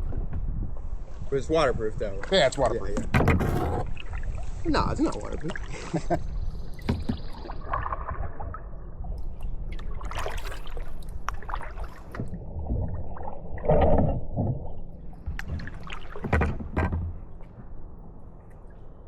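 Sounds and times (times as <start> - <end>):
water dribbling and gurgling: 1.7 - 19.0
paddle splashing water: 2.0 - 17.8
low rumble: 7.5 - 16.2.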